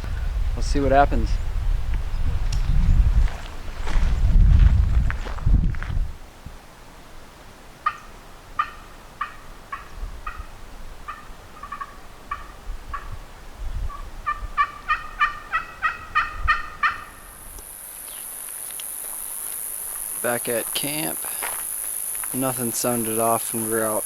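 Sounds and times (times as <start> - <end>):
turkey yelps: 7.8 - 10.5, 11.1 - 13.1, 13.9 - 17.4.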